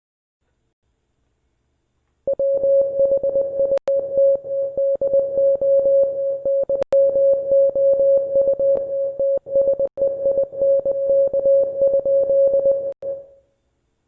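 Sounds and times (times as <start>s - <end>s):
morse code beeps: 2.3s - 13.2s.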